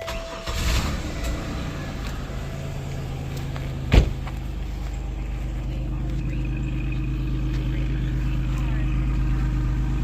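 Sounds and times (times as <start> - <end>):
car engine idling: 0.0 - 10.0
sharp thump: 3.8 - 4.4.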